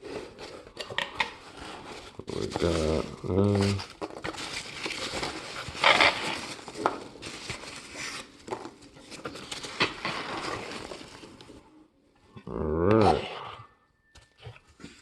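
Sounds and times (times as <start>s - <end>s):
packing material rustling: 0.0s - 11.6s.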